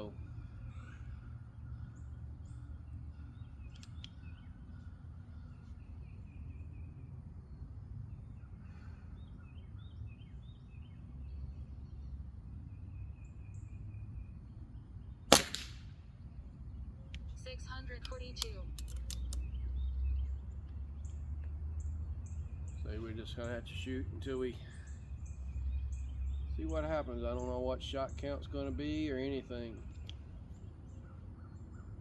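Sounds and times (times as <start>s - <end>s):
faint bird chirps: 0.0s - 15.3s, 16.0s - 27.6s
air pistol shot: 15.3s - 16.0s.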